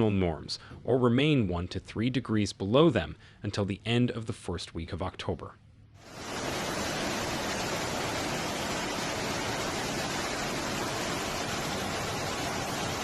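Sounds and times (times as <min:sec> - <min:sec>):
flood water rushing: 0:06.0 - 0:13.0.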